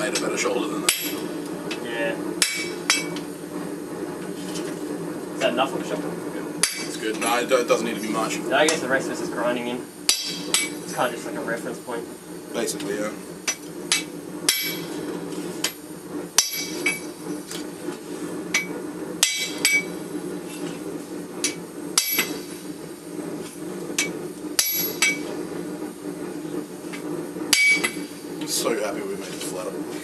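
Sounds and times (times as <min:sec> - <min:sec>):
steady low rush: 0:00.0 - 0:30.0
hammer striking steel on anvil: 0:02.4 - 0:03.1, 0:06.6 - 0:06.9, 0:10.1 - 0:10.8, 0:13.5 - 0:14.9, 0:16.4 - 0:17.0, 0:18.5 - 0:19.9, 0:21.4 - 0:22.4, 0:24.0 - 0:25.2, 0:27.5 - 0:28.0.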